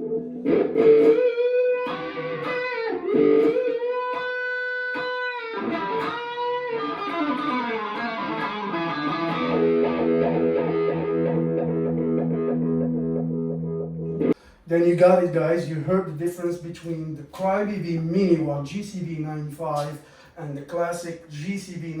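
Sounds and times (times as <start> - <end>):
electric guitar with wah pedal: 0.0 - 14.4.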